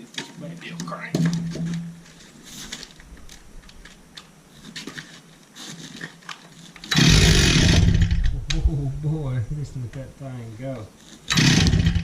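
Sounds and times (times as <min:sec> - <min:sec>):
steady low hum: 0:06.7 - 0:12.0
chainsaw pull-start rasps and clicks: 0:06.8 - 0:08.4, 0:11.3 - 0:12.0.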